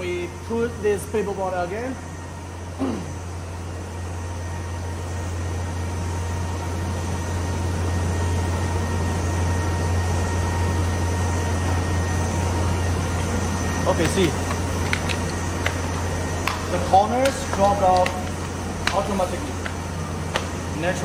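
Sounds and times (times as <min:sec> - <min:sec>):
faint steady machine tones: 0:00.0 - 0:21.0
cardboard cutting machine running: 0:09.6 - 0:21.0.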